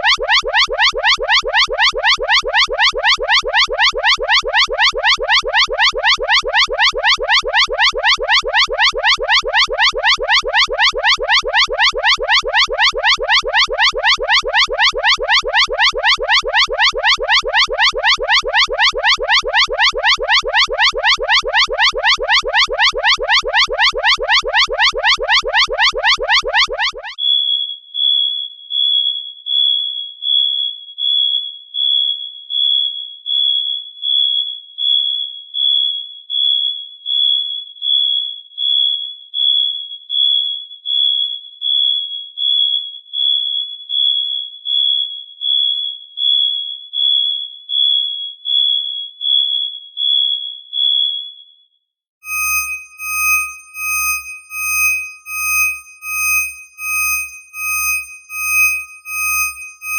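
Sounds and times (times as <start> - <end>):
high-pitched electronic alarm beeping: 0.0 - 27.2, 52.3 - 59.9
lower electronic alarm beeping: 0.0 - 27.2, 52.3 - 59.9.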